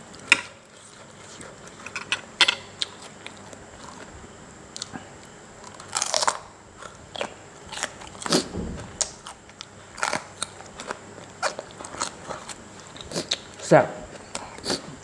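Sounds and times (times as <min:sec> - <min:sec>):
light crunches of eating: 0:00.0 - 0:15.0
wet chewing clicks: 0:04.7 - 0:15.0.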